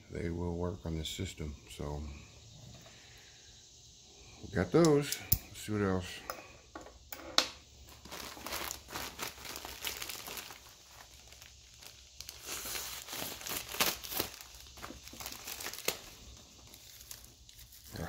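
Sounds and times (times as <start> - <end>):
package packaging crinkling: 7.8 - 18.0
packaging snaps: 7.9 - 17.8.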